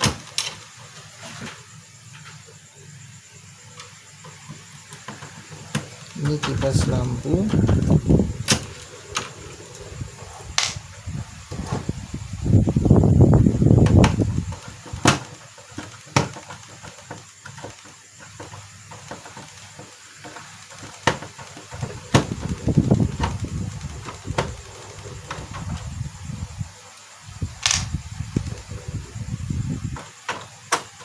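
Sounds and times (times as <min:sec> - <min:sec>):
plastic parts clicking: 0:04.9 - 0:09.7, 0:27.6 - 0:28.0
low bumping and rubbing: 0:06.2 - 0:14.9.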